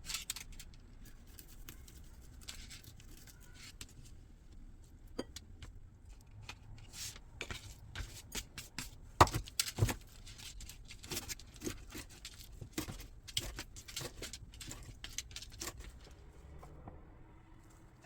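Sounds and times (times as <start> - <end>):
kitchen utensils clicking and tapping: 9.2 - 16.1.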